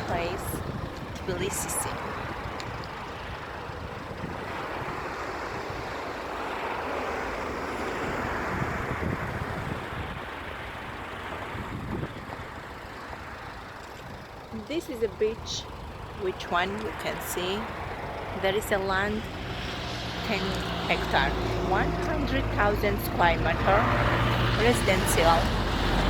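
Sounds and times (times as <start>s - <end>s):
vehicle passing by: 16.2s - 26.0s.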